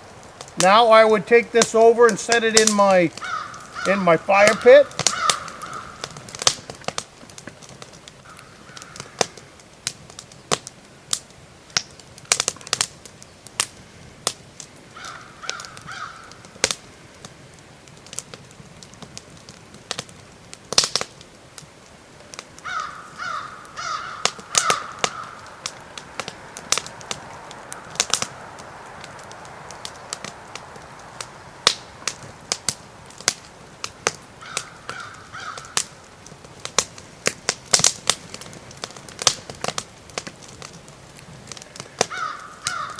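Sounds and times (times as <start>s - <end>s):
fire crackling: 0.0s - 42.9s
twigs snapping and popping: 1.6s - 16.8s, 18.0s - 21.7s, 22.3s - 42.9s
crow cawing: 3.1s - 6.2s, 8.2s - 9.4s, 15.0s - 16.4s, 22.6s - 25.6s, 34.4s - 35.9s, 42.0s - 42.9s.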